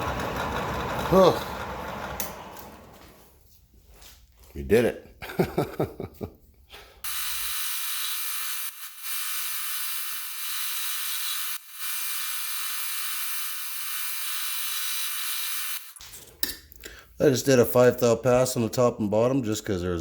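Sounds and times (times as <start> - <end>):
power tool motor whining: 7.1 - 16.0.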